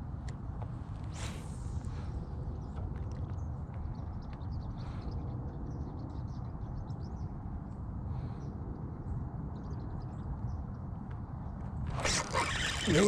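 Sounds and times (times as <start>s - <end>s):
small birds chirping: 11.9s - 13.0s.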